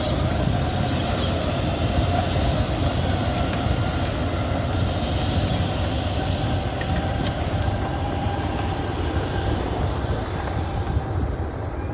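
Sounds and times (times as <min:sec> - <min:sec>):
bulldozer engine rumbling: 0:00.0 - 0:11.9.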